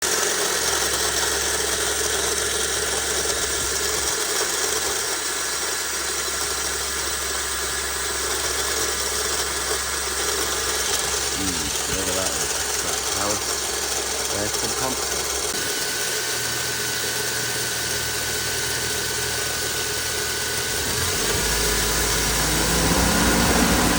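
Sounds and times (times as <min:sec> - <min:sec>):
engine grinding noise: 0:08.9 - 0:15.7, 0:17.4 - 0:23.9
car engine idling: 0:10.0 - 0:15.6, 0:19.0 - 0:23.9.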